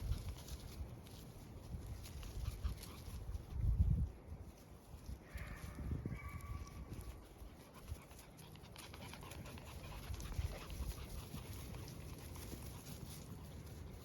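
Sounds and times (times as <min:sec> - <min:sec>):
puppies panting: 0:00.0 - 0:00.9, 0:02.0 - 0:03.6, 0:06.9 - 0:14.0.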